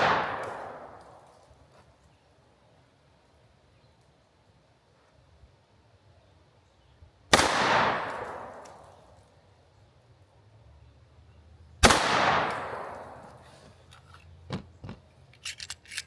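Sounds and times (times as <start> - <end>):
pistol shots with echo: 0.0 - 1.2, 7.3 - 9.0, 11.8 - 13.4.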